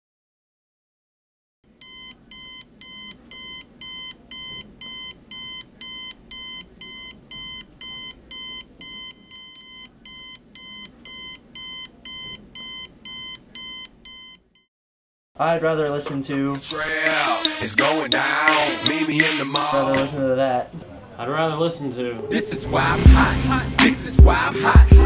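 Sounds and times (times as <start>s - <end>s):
alarm clock beeping: 1.8s - 14.7s, 16.7s - 19.8s.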